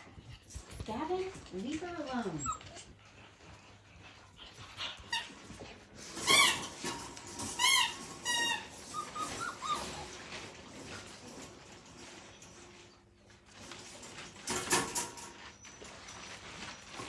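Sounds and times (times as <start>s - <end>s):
puppy whimpering: 1.7s - 11.1s, 14.7s - 17.0s
puppy yelping: 2.3s - 3.0s, 7.4s - 10.4s.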